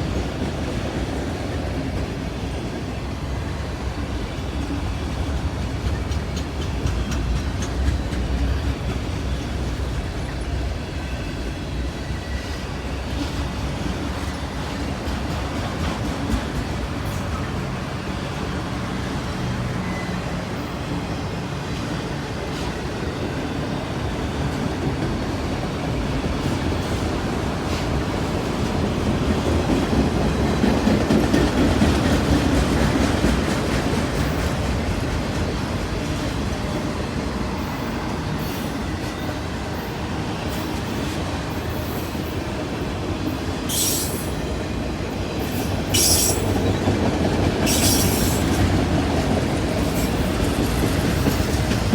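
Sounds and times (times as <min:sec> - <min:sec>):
freight train rumble and clatter: 0:00.0 - 0:51.9
high-pitched wheel squeals: 0:45.9 - 0:46.6.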